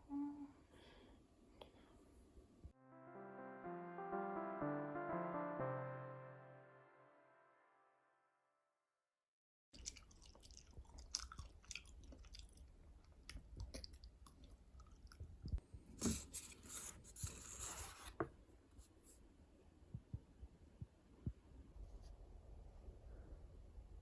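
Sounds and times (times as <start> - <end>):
chewing with wet clicks: 9.8 - 15.6.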